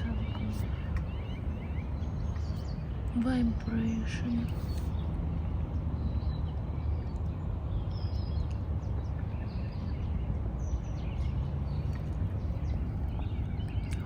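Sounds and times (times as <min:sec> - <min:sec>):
faint bird chirps: 0:00.0 - 0:05.1
steady low rumble: 0:00.0 - 0:14.0.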